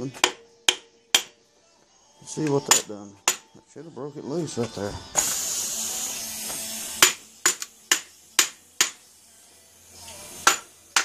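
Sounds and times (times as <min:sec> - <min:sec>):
hammer tapping metal: 0:00.1 - 0:01.4, 0:02.7 - 0:03.5, 0:07.0 - 0:09.0, 0:10.4 - 0:11.0.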